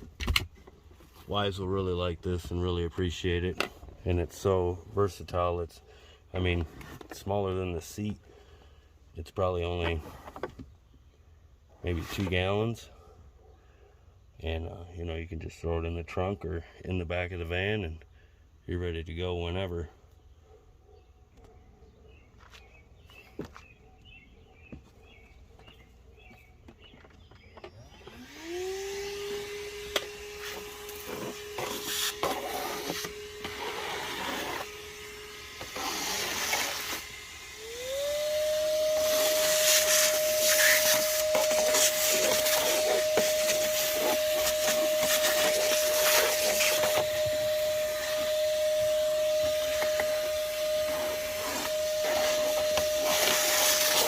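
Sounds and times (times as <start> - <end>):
shop vacuum running: 27.6 - 54.0.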